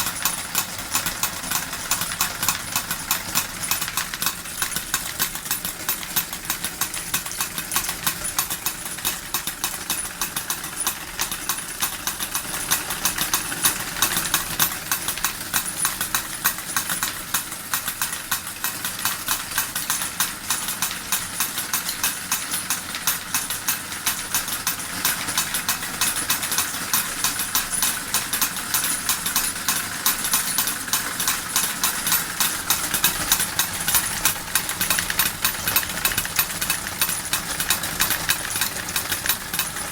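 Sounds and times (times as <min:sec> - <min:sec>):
miniature forging hammers clattering: 0:19.6 - 0:39.9.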